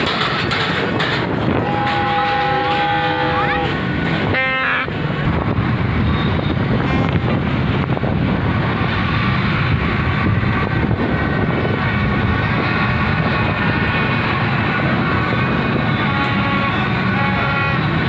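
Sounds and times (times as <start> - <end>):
horns tooting: 1.4 - 5.0, 5.9 - 7.5, 11.8 - 18.0.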